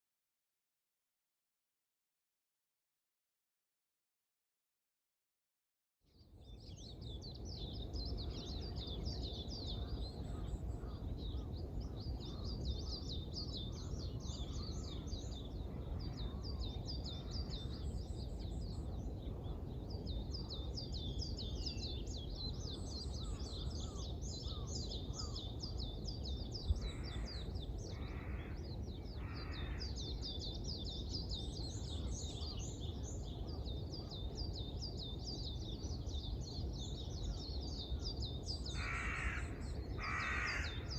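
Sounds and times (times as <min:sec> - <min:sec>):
small birds chirping: 0:06.1 - 0:40.9
low background rumble: 0:06.4 - 0:40.9
crow cawing: 0:26.8 - 0:28.6, 0:29.2 - 0:29.9, 0:38.8 - 0:40.9.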